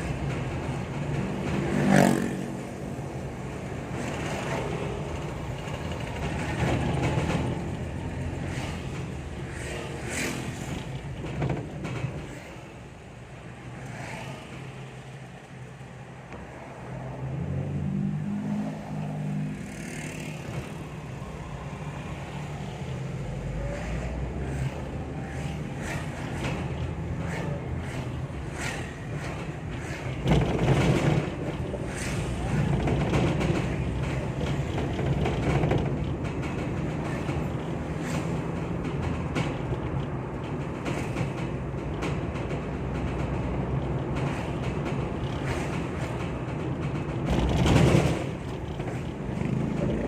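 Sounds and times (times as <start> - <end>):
vehicle engine and road noise: 0.0 - 50.0
short knocks and rattles: 29.2 - 50.0.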